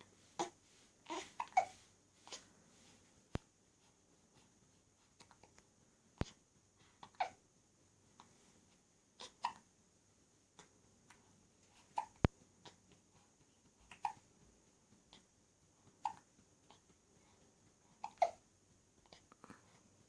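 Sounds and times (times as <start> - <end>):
hiccups: 9.2 - 9.6, 11.9 - 12.2, 13.9 - 14.2, 16.0 - 16.3, 18.0 - 18.4.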